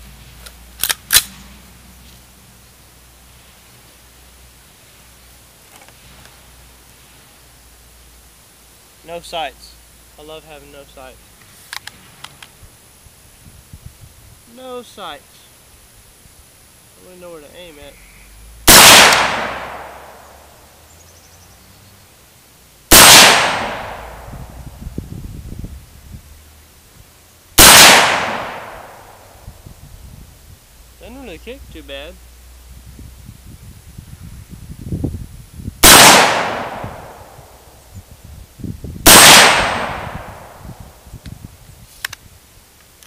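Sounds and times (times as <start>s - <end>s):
rifle shots echoing: 18.7s - 20.2s, 22.9s - 24.2s, 27.6s - 29.2s, 35.8s - 37.4s, 39.1s - 40.6s.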